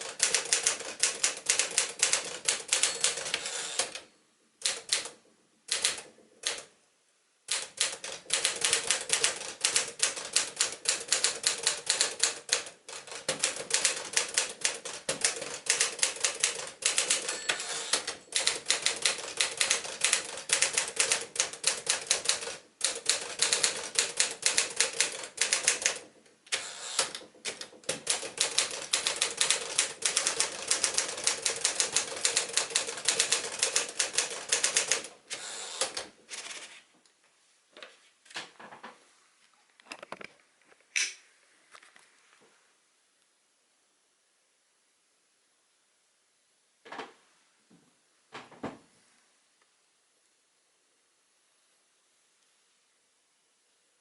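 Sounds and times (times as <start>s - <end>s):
manual typewriter typing fast: 0.0s - 4.0s, 4.6s - 6.7s, 7.5s - 36.7s.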